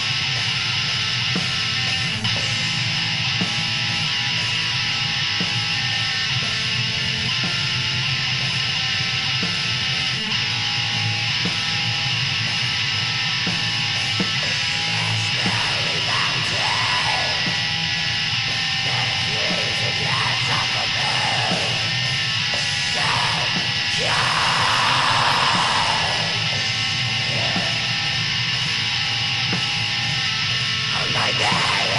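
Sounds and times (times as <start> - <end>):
distorted electric guitars: 0.0 - 31.9
harsh screamed vocals: 14.3 - 28.3, 30.8 - 31.9.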